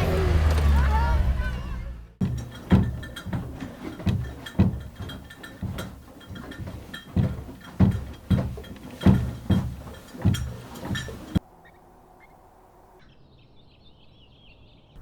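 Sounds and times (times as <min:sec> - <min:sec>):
heavy thuds and knocks: 0:02.2 - 0:11.4.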